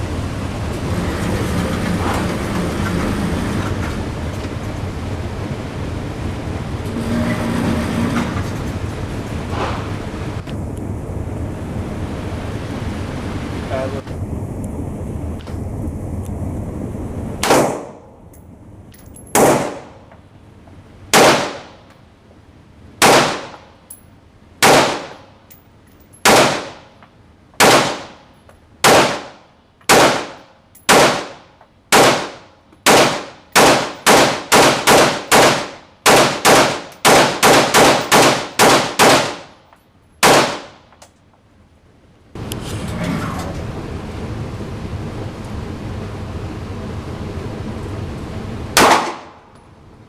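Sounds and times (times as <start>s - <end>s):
gunshots: 17.4s - 18.0s, 19.4s - 20.0s, 21.1s - 21.8s, 23.0s - 23.6s, 24.6s - 25.2s, 26.2s - 26.9s, 27.6s - 28.2s, 28.8s - 39.5s, 40.2s - 40.8s, 48.8s - 49.4s.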